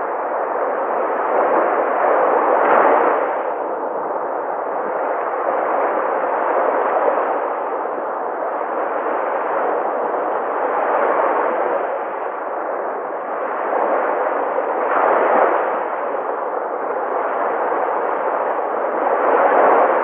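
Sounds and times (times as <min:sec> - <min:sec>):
sea waves breaking on shore: 0:08.6 - 0:20.0.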